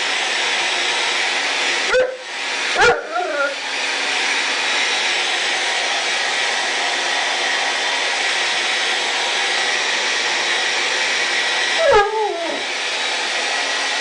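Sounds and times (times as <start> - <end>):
blow dryer running: 0.0 - 14.0.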